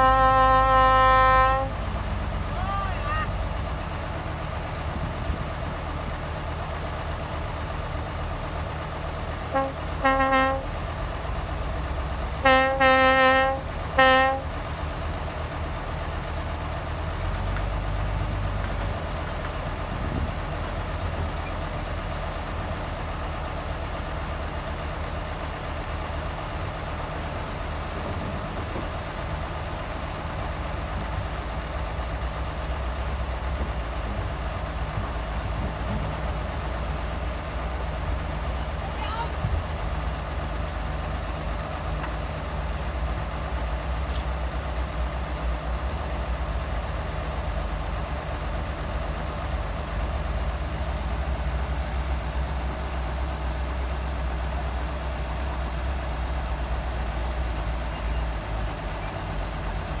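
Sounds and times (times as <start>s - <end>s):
heavy vehicle horn toots: 0.0s - 1.8s, 9.5s - 10.8s, 12.4s - 14.6s
diesel engine running: 0.0s - 60.0s.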